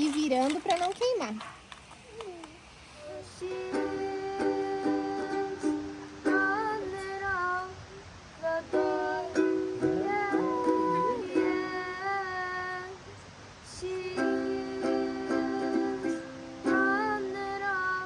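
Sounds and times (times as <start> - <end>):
person singing: 3.0 - 7.8, 8.4 - 18.0
ukulele plucked chords: 3.4 - 7.2, 8.6 - 12.1, 13.9 - 18.0.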